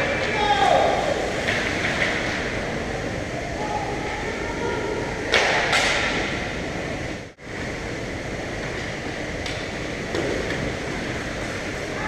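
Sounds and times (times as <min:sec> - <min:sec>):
rink crowd hubbub: 0:00.0 - 0:06.9.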